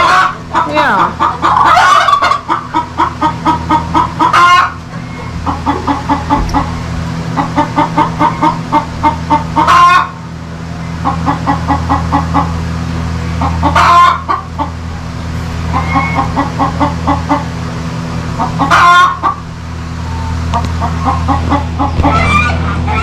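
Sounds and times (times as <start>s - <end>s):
chicken squawks: 0.0s - 6.8s, 7.4s - 10.2s, 13.4s - 14.7s, 15.7s - 17.4s, 18.4s - 19.4s, 20.1s - 23.0s
low hum: 0.0s - 11.3s
chickens clucking: 0.0s - 17.6s, 18.3s - 23.0s.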